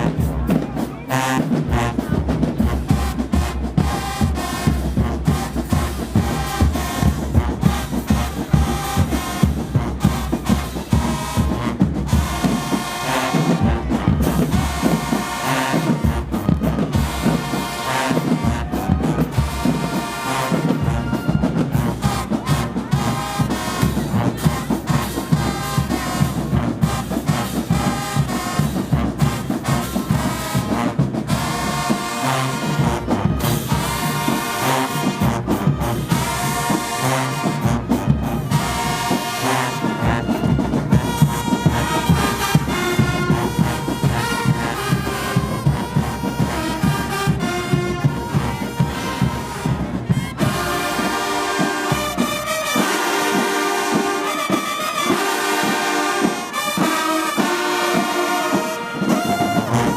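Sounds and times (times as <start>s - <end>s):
brass marching band playing: 0.0s - 59.9s
trombones and trumpets: 0.0s - 59.9s.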